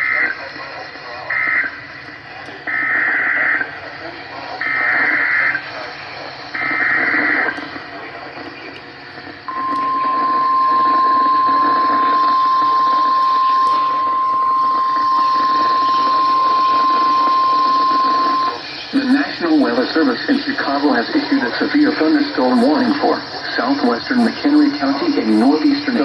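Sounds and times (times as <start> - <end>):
steady warning alarm tone: 0.0 - 2.1, 2.7 - 8.1, 9.0 - 26.0
static hiss: 0.0 - 26.0
buzzy data burst: 9.5 - 26.0.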